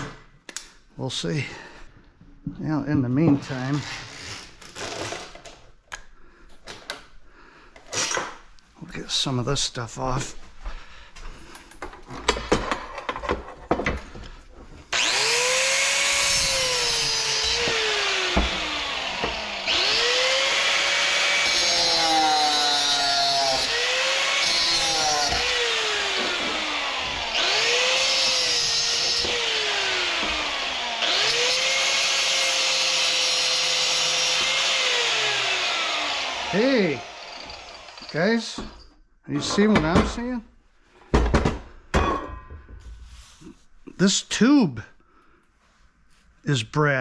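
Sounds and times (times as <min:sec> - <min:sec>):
power tool rasping on metal: 0:14.9 - 0:38.4.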